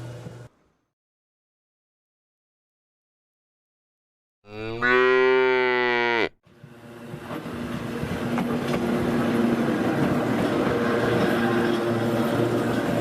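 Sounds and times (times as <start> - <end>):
electric railcar running: 6.5 - 13.0.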